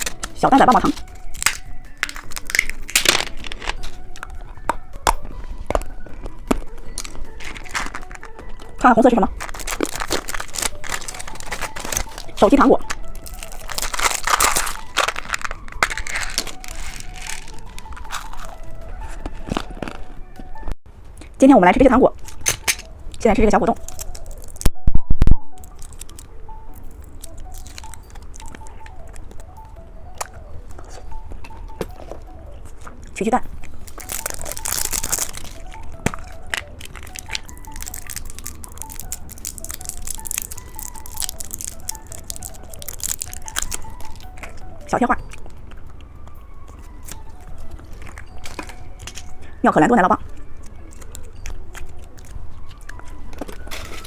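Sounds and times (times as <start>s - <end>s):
plastic packaging crinkling: 0.0s - 20.2s, 23.8s - 24.7s, 25.6s - 29.5s, 33.6s - 44.7s, 46.7s - 49.6s, 50.3s - 54.0s
close crunching and crackling: 0.0s - 21.4s, 22.2s - 24.8s, 25.6s - 54.0s
soft background music: 0.0s - 54.0s.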